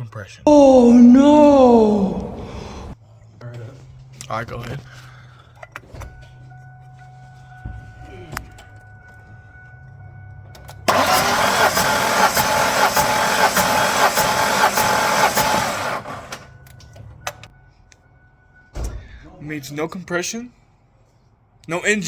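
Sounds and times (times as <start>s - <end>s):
engine cranking without firing: 10.5s - 17.5s.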